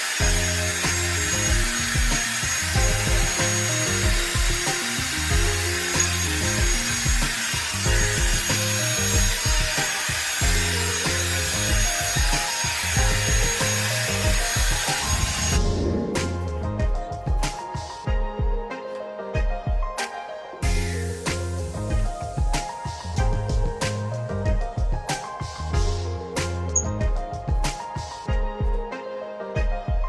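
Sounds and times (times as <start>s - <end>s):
hair dryer brush running: 0.0s - 16.8s, 20.6s - 23.8s
background music with beat: 0.0s - 30.0s.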